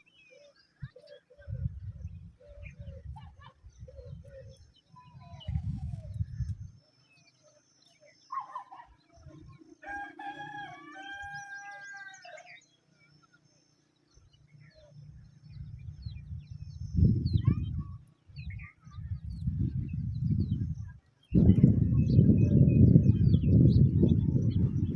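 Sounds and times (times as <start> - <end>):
low rumbling on microphone: 1.4 - 6.8, 14.3 - 24.9
rooster crowing: 9.8 - 12.5.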